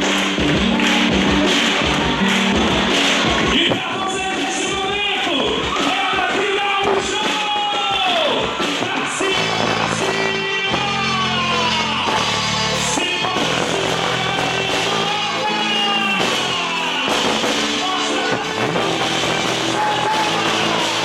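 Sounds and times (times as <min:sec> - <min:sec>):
held bass notes: 0:00.0 - 0:04.4, 0:09.3 - 0:21.0
person singing: 0:05.8 - 0:21.0.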